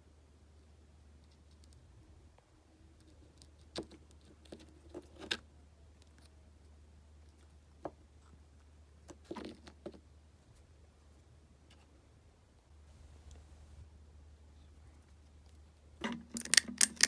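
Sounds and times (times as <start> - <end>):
low steady hum: 10.1 - 17.0.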